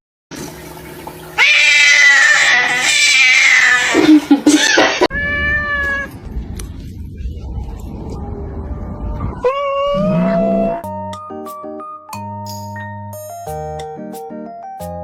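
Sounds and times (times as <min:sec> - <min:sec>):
cat meowing: 0:01.4 - 0:04.0, 0:04.6 - 0:06.1, 0:09.4 - 0:10.8
cat yowling: 0:01.4 - 0:06.1, 0:09.4 - 0:10.8.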